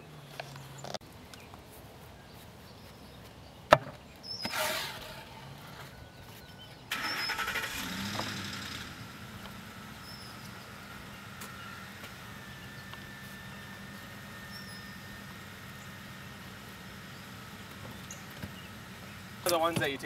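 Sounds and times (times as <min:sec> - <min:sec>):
engine starting: 0:04.5 - 0:05.4, 0:06.9 - 0:09.0.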